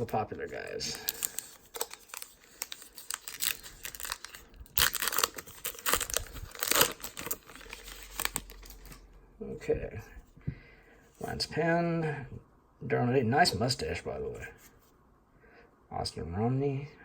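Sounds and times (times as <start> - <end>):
wrapper tearing and crinkling: 0.8 - 9.0.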